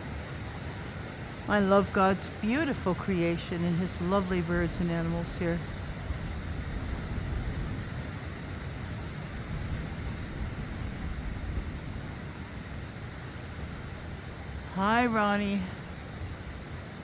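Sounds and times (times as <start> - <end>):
rushing noise with low rumble: 3.6 - 14.4.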